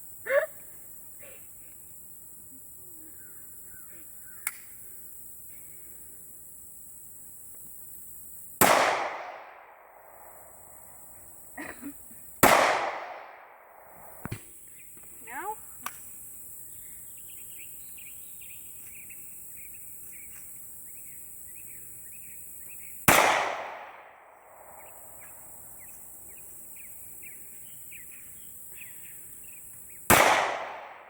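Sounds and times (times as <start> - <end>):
gunshots: 8.6 - 9.8, 12.4 - 13.7, 23.1 - 24.3, 30.1 - 31.0.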